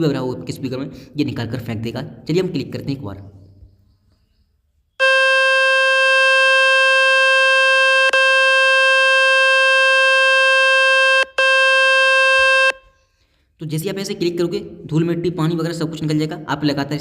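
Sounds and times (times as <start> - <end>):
loud steady buzzing tone: 5.0 - 13.0.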